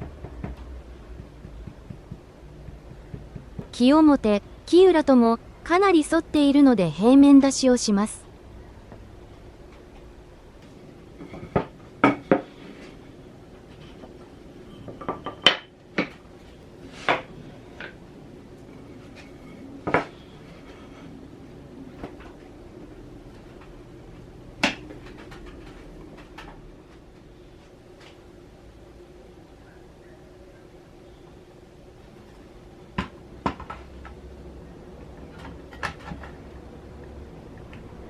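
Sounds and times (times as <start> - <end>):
hard objects knocking on workbench: 0.0 - 3.7, 11.2 - 12.5.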